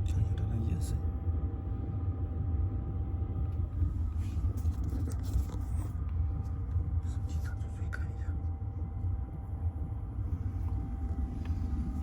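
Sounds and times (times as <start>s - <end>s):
strong wind rumbling: 8.3s - 12.0s.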